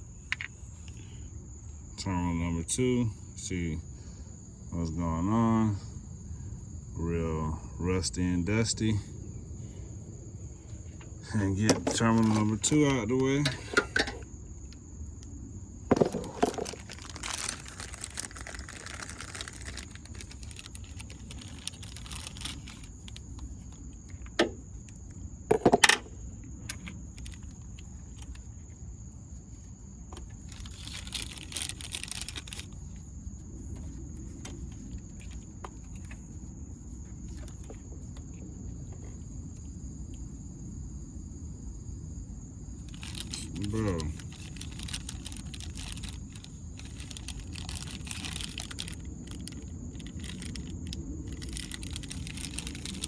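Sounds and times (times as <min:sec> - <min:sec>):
hand tools clinking on metal: 0:11.4 - 0:14.2.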